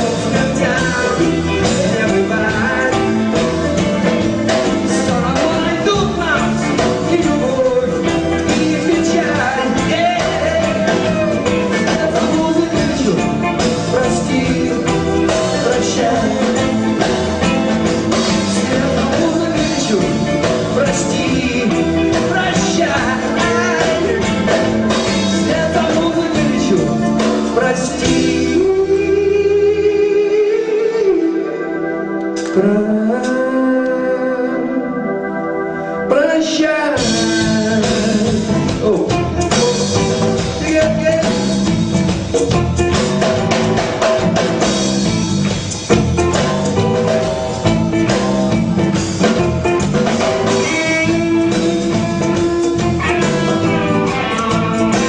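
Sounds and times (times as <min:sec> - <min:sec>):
drum beat: 0:00.0 - 0:27.6, 0:37.5 - 0:55.0
rock band playing live: 0:00.0 - 0:55.0
sliding lead guitar line: 0:00.0 - 0:55.0.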